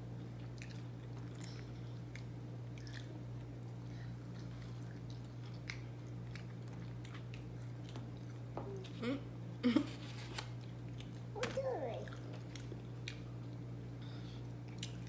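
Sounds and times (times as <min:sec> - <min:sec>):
chewing and mouth clicks: 0:00.2 - 0:09.0, 0:10.4 - 0:11.3, 0:12.0 - 0:13.7, 0:14.5 - 0:15.0.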